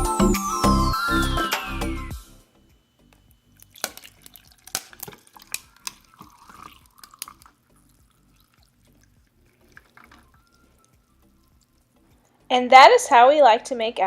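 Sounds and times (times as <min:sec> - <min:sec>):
tea pouring: 0:03.5 - 0:12.1
ice cubes clinking into cup: 0:03.6 - 0:07.8.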